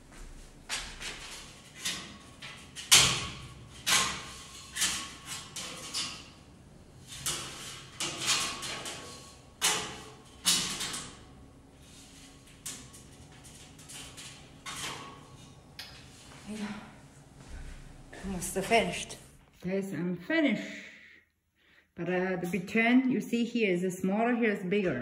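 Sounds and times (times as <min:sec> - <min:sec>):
objects knocking and clunking: 0:07.0 - 0:11.3.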